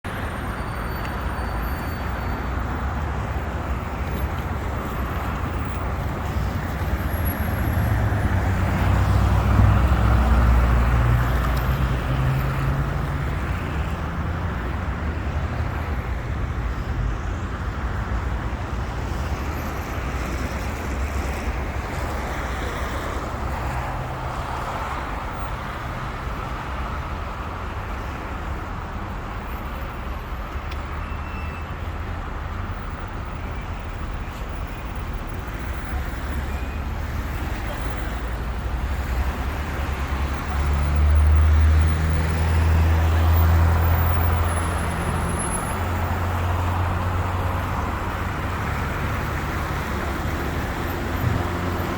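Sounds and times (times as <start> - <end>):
cars passing: 0.1 - 31.0, 31.8 - 51.9
heavy vehicle rumbling past: 38.8 - 51.9.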